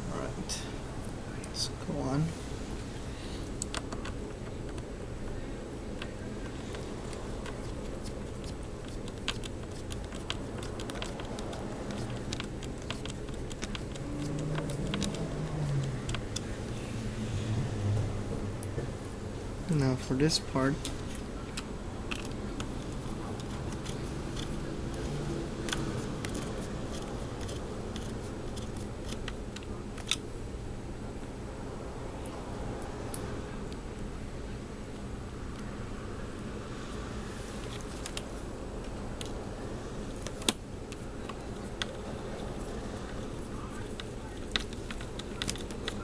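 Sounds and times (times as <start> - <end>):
steady low hum: 0.0 - 46.0
laptop parts clicking: 3.6 - 16.6, 20.8 - 30.2, 40.1 - 46.0
small clicks of laptop parts: 6.0 - 16.5.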